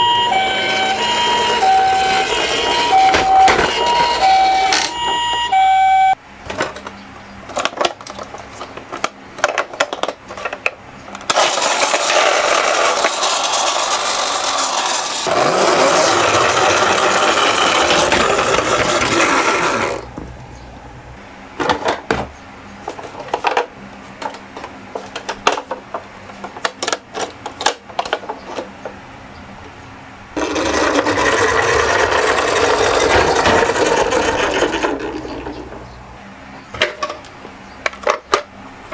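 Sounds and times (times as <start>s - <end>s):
two-tone toy siren: 0.0s - 6.2s
toy cars rattling down a slope: 7.5s - 20.1s, 30.4s - 35.9s.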